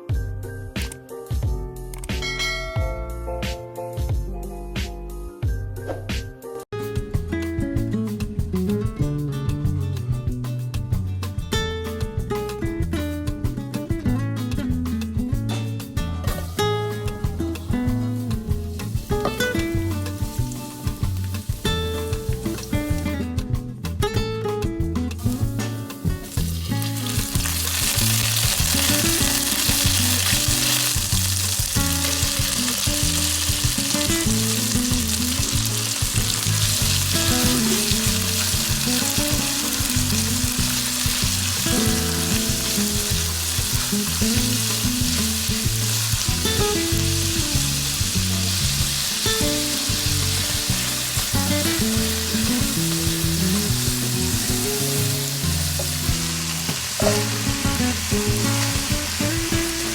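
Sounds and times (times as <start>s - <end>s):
food sizzling in hot oil: 17.0s - 23.2s, 25.2s - 59.9s.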